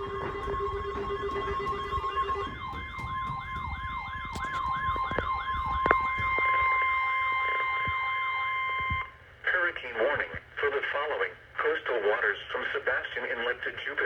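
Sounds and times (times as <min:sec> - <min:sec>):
higher steady tone: 0:00.0 - 0:08.8
siren-like sweep: 0:00.0 - 0:08.8
steady alarm tone: 0:00.0 - 0:09.2.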